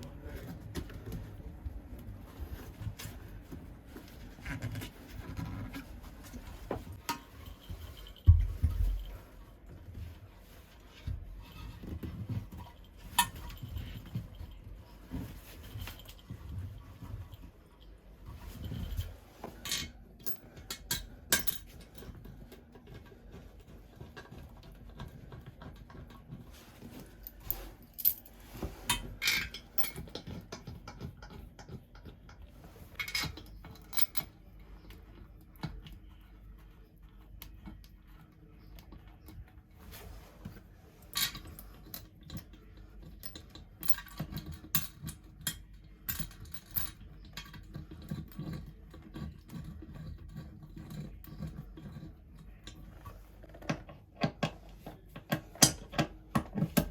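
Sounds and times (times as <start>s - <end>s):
hand tools clinking and knocking: 4.7s - 10.2s, 10.9s - 34.4s, 41.0s - 52.2s.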